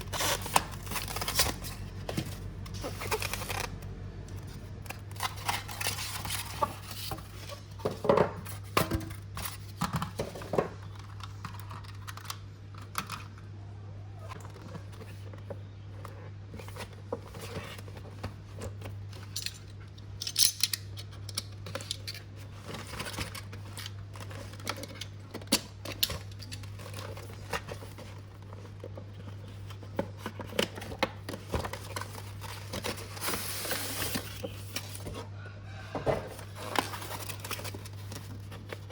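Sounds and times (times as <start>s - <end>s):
packaging rustling: 0.0s - 8.0s, 21.6s - 35.2s, 36.2s - 38.9s.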